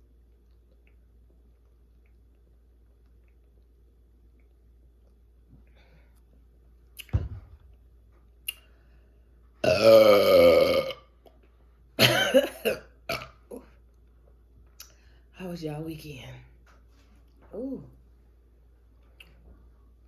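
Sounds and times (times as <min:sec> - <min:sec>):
woman burping: 0:09.6 - 0:11.1, 0:12.0 - 0:13.7.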